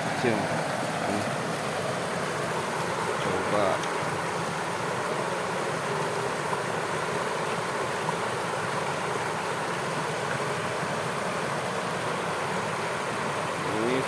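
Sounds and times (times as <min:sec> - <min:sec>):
shallow water flowing: 0:00.0 - 0:14.0.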